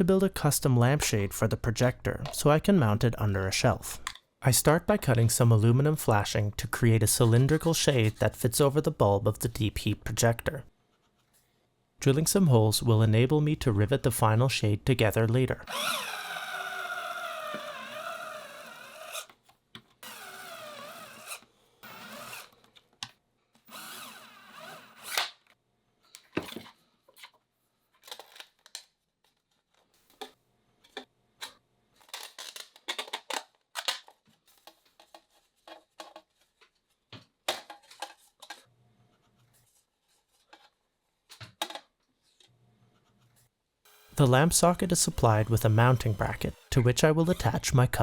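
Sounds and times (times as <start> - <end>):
power drill whining: 15.7 - 19.3, 20.0 - 22.7, 23.6 - 25.2, 43.9 - 48.0.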